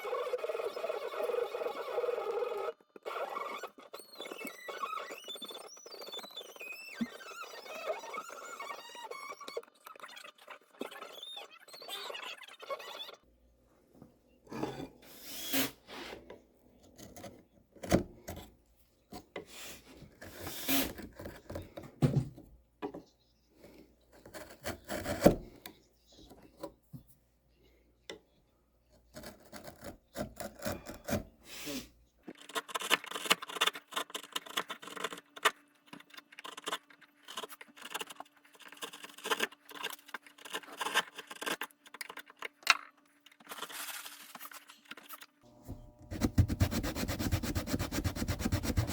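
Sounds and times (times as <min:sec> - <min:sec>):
wood rubbing and scraping: 0:45.7 - 0:48.9.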